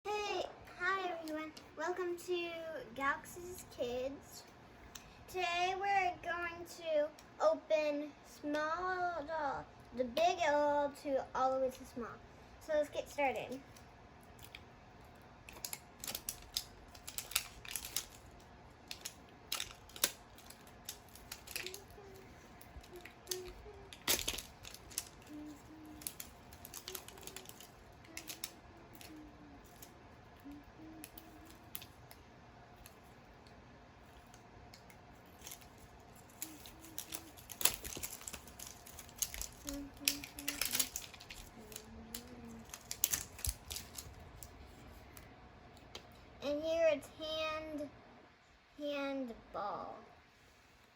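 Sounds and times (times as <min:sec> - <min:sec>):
plastic packaging crinkling: 0:13.7 - 0:32.2, 0:34.1 - 0:45.2.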